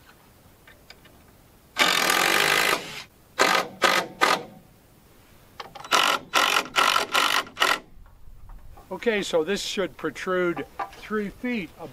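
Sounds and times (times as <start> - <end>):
power drill driving screws: 1.8 - 4.5, 5.8 - 7.8.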